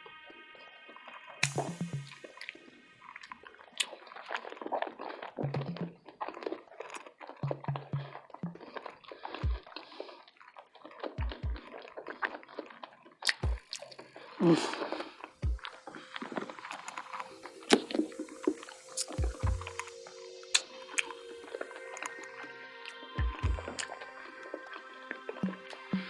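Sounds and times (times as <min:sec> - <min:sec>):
close-miked chewing: 0:02.2 - 0:19.9.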